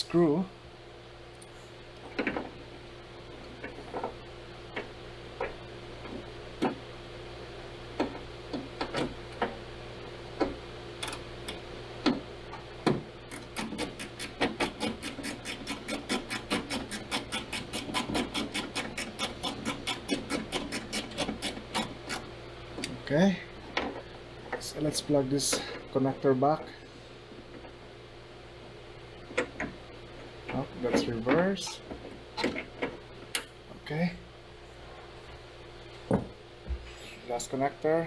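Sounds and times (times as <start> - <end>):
screwdriver clicking: 11.0 - 11.6, 13.3 - 22.2.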